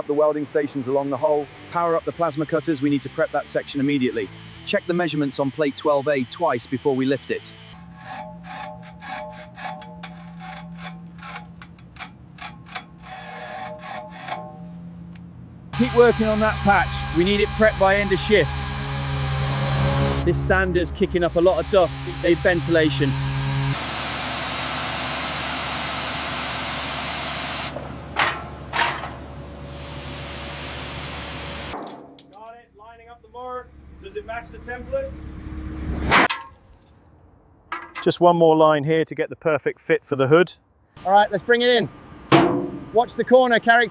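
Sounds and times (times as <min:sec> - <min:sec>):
power sander on steel: 0:01.2 - 0:31.8
rasping strokes: 0:05.8 - 0:23.8
steady low hum: 0:07.5 - 0:23.8.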